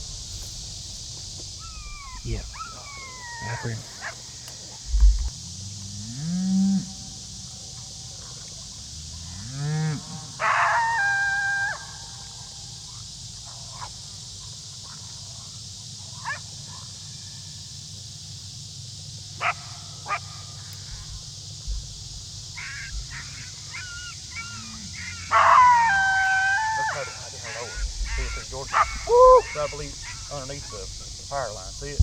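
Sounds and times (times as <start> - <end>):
coyote barking and howling: 1.5 - 5.1, 6.8 - 17.0, 19.4 - 32.0
coyote yips: 1.6 - 4.2, 22.6 - 31.9.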